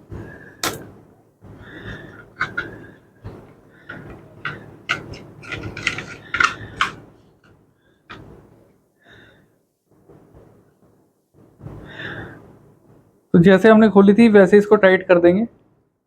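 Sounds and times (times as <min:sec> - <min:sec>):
laptop parts clicking and tapping: 0:00.6 - 0:00.9, 0:01.9 - 0:08.3.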